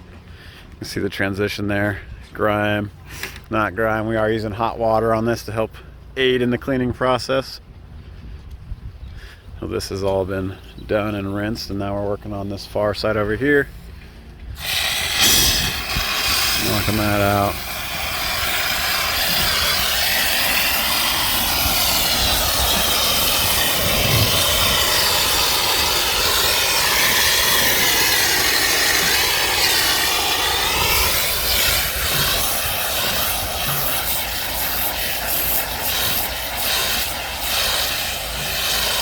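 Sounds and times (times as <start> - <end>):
pressure washer spray hissing: 14.6 - 39.0
whirring surface cleaner: 14.6 - 39.0.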